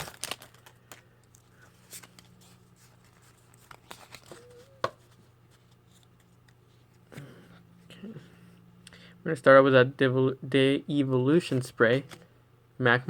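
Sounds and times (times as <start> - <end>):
trading cards tapping and rustling: 1.8 - 6.6.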